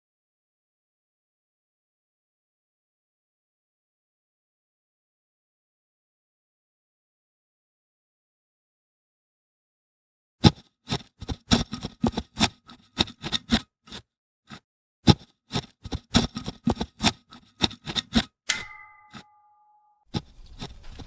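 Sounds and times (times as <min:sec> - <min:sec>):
typewriter bell ding: 0:18.5 - 0:20.0.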